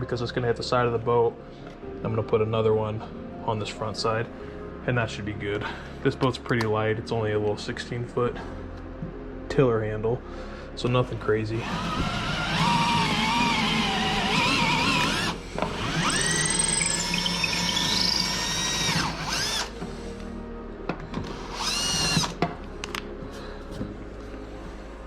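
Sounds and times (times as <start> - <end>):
power drill motor whining: 11.5 - 19.9, 21.2 - 22.4.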